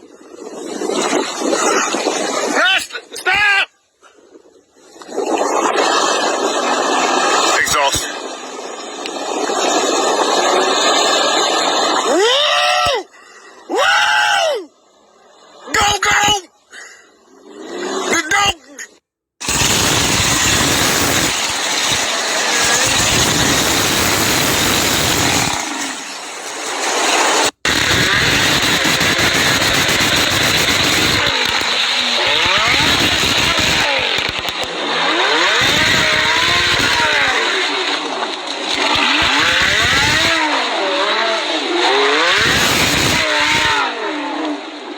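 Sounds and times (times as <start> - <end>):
car engine revving: 19.4 - 44.9
rushing noise of driving: 19.4 - 44.9.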